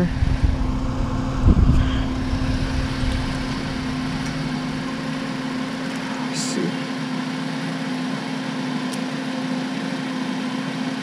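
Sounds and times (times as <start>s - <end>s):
low rumble: 0.0s - 6.9s
engine hum: 0.0s - 11.0s.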